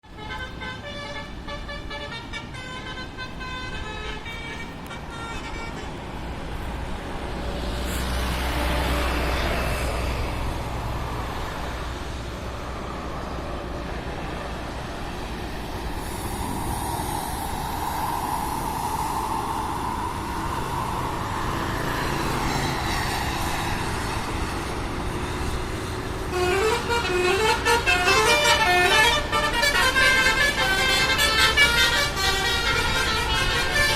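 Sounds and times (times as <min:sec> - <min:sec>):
engine and road noise: 0:00.0 - 0:33.9
musical air horn tune: 0:00.1 - 0:06.0, 0:26.3 - 0:33.9.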